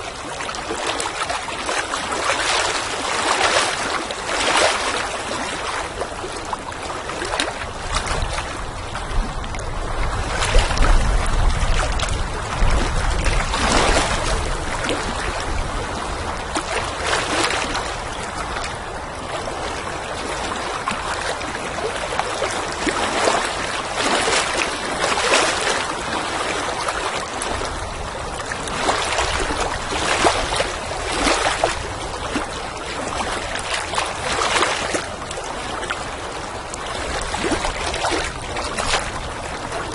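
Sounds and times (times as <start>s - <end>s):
water lapping and splashing: 0.0s - 39.9s
wind rumbling: 7.7s - 35.8s.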